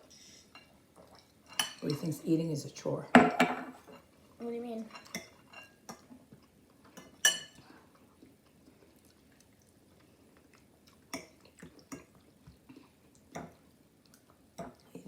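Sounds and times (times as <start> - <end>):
cutlery clinking on plate: 7.0 - 7.6.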